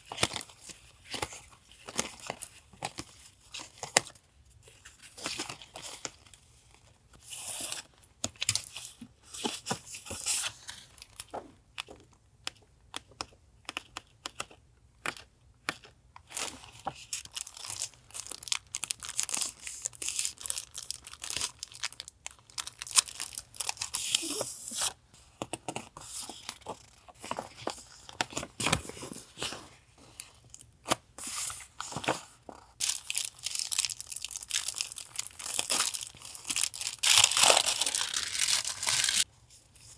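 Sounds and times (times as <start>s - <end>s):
paper crinkling and tearing: 32.8s - 39.2s.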